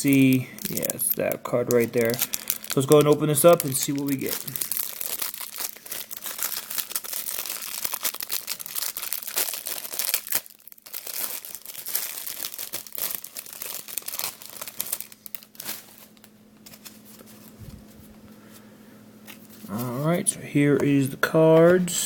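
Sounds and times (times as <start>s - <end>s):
wrapper crinkling and tearing: 0.0s - 17.6s.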